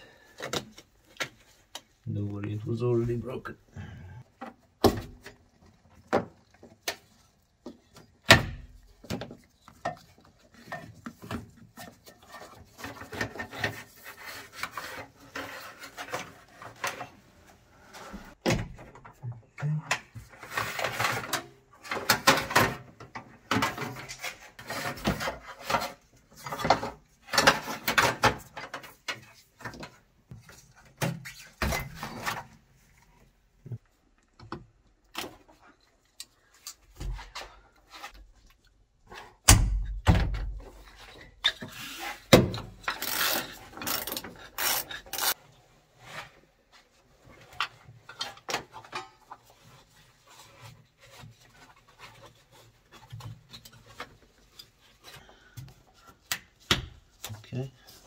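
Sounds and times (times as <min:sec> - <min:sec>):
plastic trim rustling and scraping: 0:40.9 - 0:45.4.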